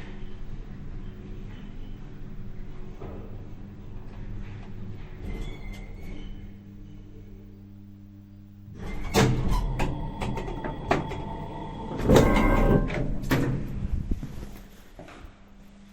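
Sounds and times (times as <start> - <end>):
low steady hum: 6.3 - 15.9
elevator door sliding and clanking: 8.7 - 14.5
clunks knocks and rattles: 12.0 - 13.7.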